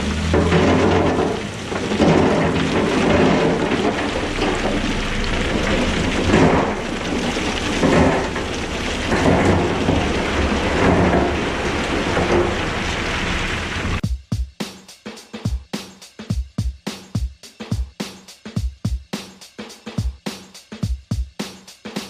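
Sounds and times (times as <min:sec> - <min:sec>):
loud steady rumbling: 0:00.0 - 0:14.0
music with drum beat: 0:14.0 - 0:22.0.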